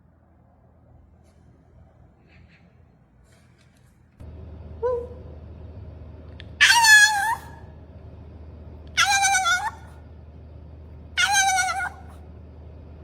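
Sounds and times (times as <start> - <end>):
dog whining: 6.6 - 7.6, 9.0 - 10.0, 11.2 - 12.2.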